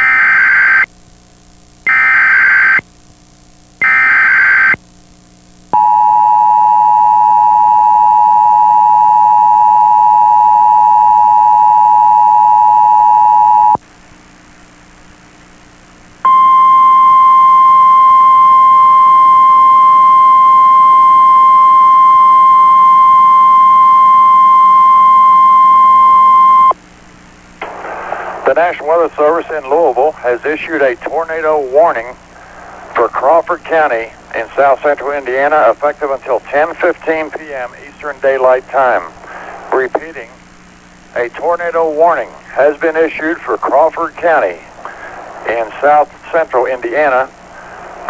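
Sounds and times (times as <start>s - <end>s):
steady warning alarm tone: 5.8s - 13.8s, 16.3s - 26.7s
two-tone attention signal: 5.8s - 13.8s.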